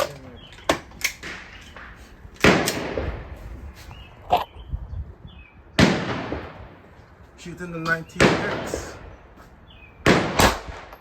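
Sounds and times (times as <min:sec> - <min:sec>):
loud handgun shot with echo: 0:02.4 - 0:03.3, 0:05.8 - 0:06.7, 0:08.2 - 0:09.0, 0:10.0 - 0:11.0
light gunshot cracks: 0:10.0 - 0:11.0.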